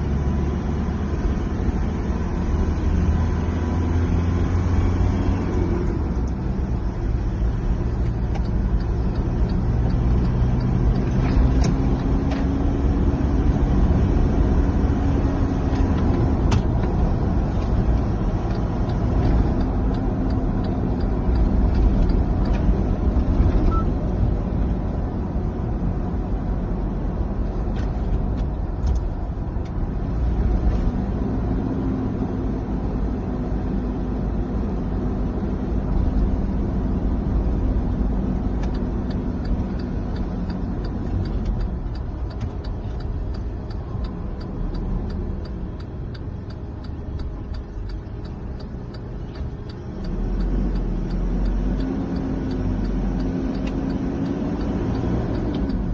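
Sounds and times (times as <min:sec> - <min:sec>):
fast even ticking: 0:38.7 - 0:55.9.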